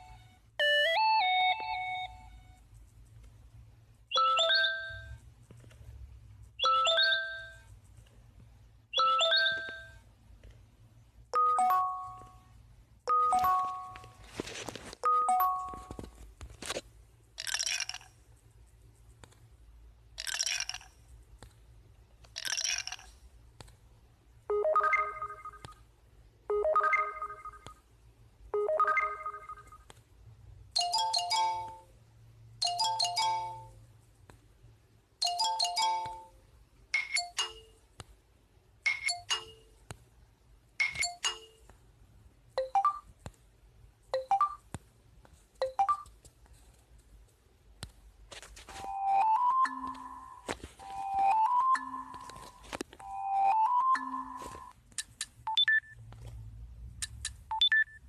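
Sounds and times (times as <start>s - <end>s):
phone notification chimes: 4.1s - 5.1s, 6.6s - 7.6s, 9.0s - 10.0s, 11.4s - 12.4s, 13.1s - 14.2s, 15.0s - 16.1s, 24.5s - 25.6s, 26.5s - 27.6s, 28.6s - 29.8s, 48.8s - 54.7s.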